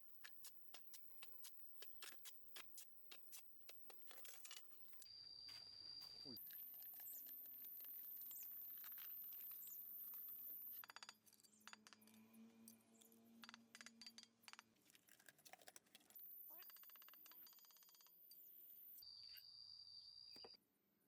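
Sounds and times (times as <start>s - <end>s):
faint clicks and clinks: 6.4s - 18.5s.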